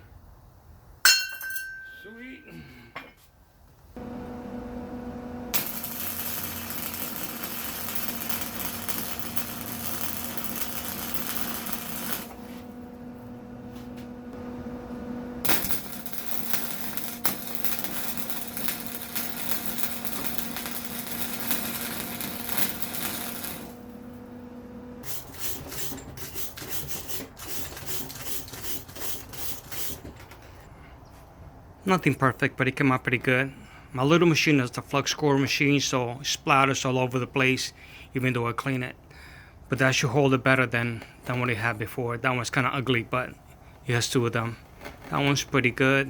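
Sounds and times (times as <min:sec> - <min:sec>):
welder machine hum: 0:04.0 - 0:30.0
welding crackle and spatter: 0:04.1 - 0:14.7, 0:15.4 - 0:24.3, 0:44.6 - 0:45.5.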